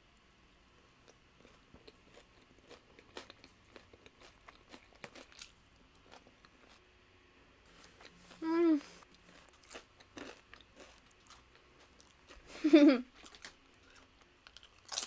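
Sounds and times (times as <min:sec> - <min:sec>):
chips being crunched and chewed: 0:01.4 - 0:06.8, 0:09.1 - 0:12.4, 0:13.2 - 0:15.0.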